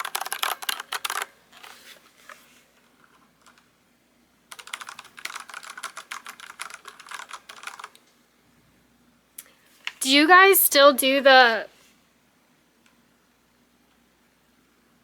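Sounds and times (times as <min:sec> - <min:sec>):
typing on mechanical keyboard: 0:00.0 - 0:01.3, 0:03.0 - 0:03.7, 0:04.5 - 0:08.1.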